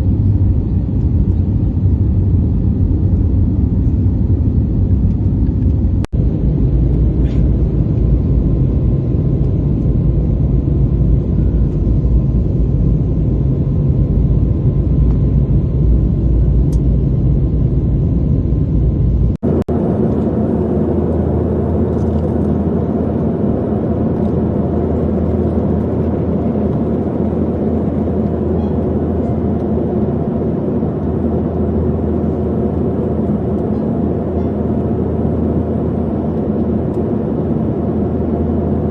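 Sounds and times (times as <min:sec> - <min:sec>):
airliner cabin rumble: 0:00.0 - 0:38.9.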